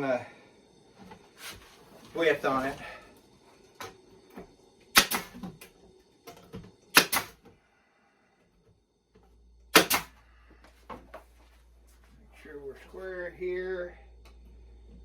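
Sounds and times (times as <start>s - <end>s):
sharp wooden knocks: 6.9s - 7.3s, 9.7s - 10.1s.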